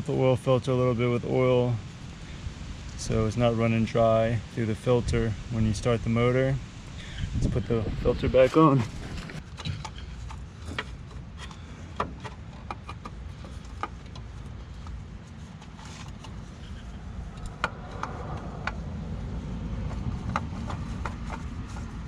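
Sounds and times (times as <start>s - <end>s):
low background rumble: 0.0s - 22.0s
oil filter clicks and taps: 9.5s - 15.0s.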